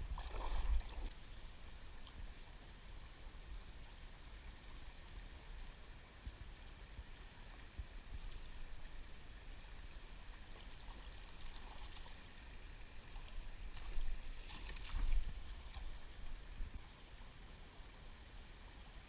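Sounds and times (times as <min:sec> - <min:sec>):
water sloshing and splashing: 0:00.0 - 0:01.2, 0:13.1 - 0:16.4.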